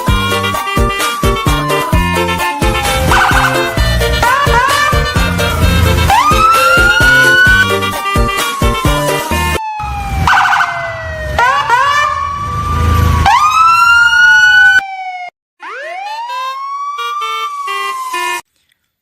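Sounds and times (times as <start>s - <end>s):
sirens wailing: 0.0s - 18.4s
low rumble: 2.6s - 7.2s.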